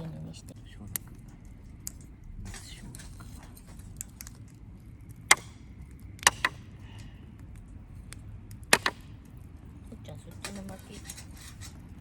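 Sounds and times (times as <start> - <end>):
sharp hard knocks: 5.3 - 5.6, 6.2 - 6.7, 8.7 - 9.2.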